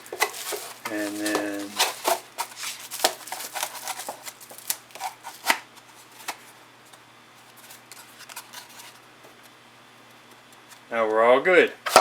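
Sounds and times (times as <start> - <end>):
plastic wrap crinkling: 0.0 - 6.6.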